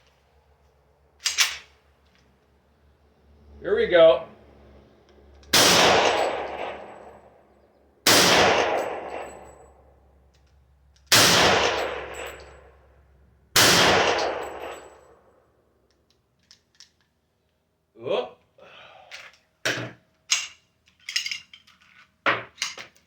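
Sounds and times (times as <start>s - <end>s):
pistol shots echoing: 5.5s - 7.2s, 8.0s - 9.6s, 11.1s - 12.4s, 13.6s - 15.0s.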